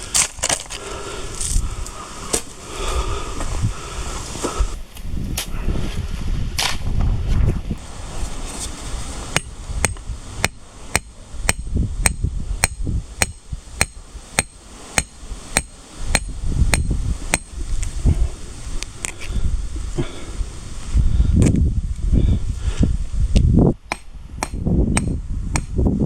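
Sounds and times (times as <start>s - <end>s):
hammer blows ringing: 9.4s - 17.5s.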